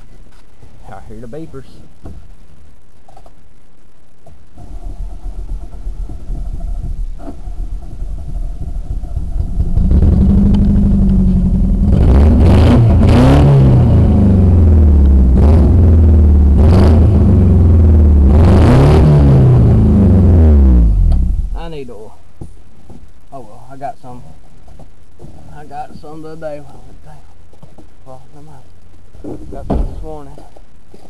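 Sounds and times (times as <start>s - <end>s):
loud car engine revving: 8.6s - 21.5s.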